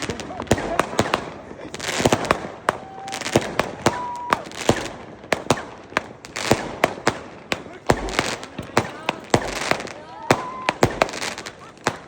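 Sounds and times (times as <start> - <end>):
firework whistles: 0.0 - 5.8, 9.3 - 12.0
firecrackers crackling: 0.0 - 12.0
firework bangs: 0.0 - 12.0.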